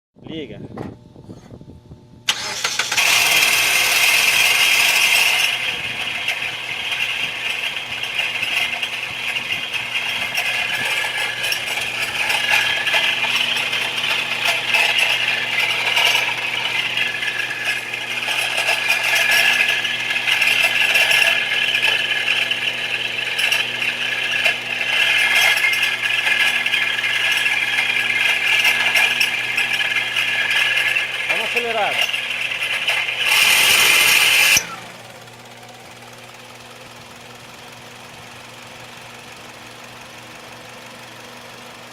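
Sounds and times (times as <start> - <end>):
loud metallic rattle: 2.3 - 35.6
car engine starting and idling: 2.3 - 41.9.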